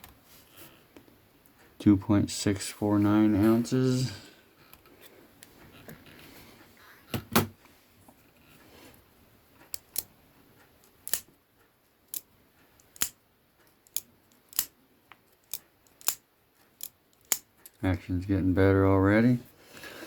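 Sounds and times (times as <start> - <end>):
folding knife metallic clicks: 10.8 - 11.3, 13.8 - 14.7, 15.5 - 16.2.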